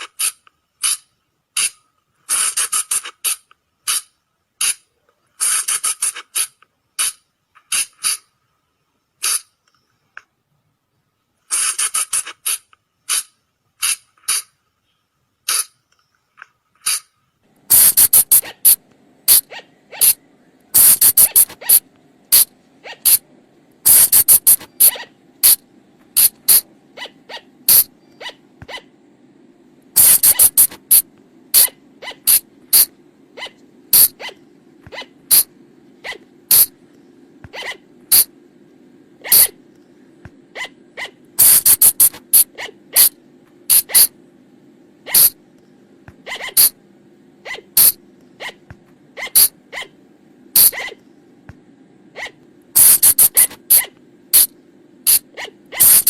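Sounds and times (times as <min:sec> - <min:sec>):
low steady hum: 0:12.6 - 0:56.0
high-pitched animal squeaks: 0:17.7 - 0:20.2, 0:20.8 - 0:23.2, 0:23.9 - 0:25.6, 0:26.2 - 0:28.9, 0:30.0 - 0:36.7, 0:37.5 - 0:38.3, 0:39.2 - 0:39.6, 0:40.5 - 0:44.1, 0:45.1 - 0:45.4, 0:46.2 - 0:46.8, 0:47.4 - 0:48.6, 0:49.2 - 0:50.0, 0:50.6 - 0:51.0, 0:52.2 - 0:54.5, 0:55.1 - 0:56.0.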